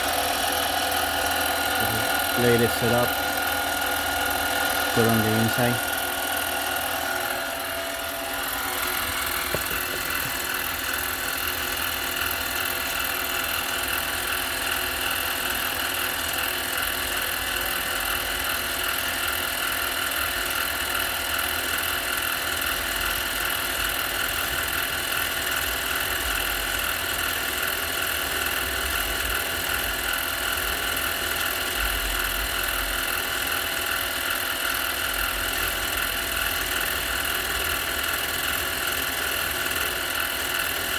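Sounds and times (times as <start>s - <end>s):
lathe motor whining: 0.0s - 17.4s
tool cutting metal ring: 0.0s - 40.9s.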